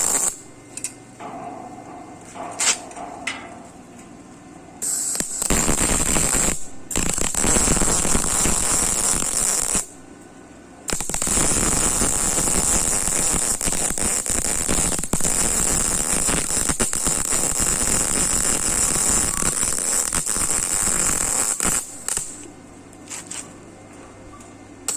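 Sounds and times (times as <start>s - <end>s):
arc welding sizzling crackle: 0.0s - 0.6s, 4.8s - 23.6s.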